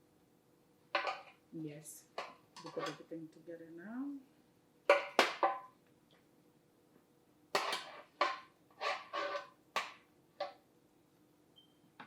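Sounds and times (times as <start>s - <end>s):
utensils clattering against a pan: 1.0s - 1.4s, 2.2s - 3.1s.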